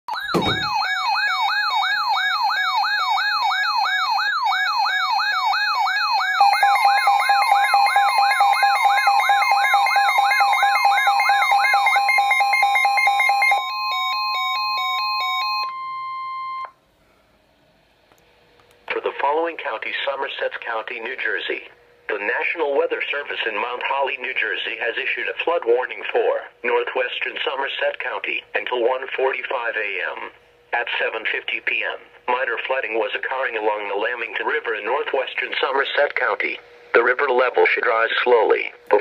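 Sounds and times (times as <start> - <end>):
electronic siren wailing: 0.1 - 16.7
steady warning tone: 0.1 - 17.4.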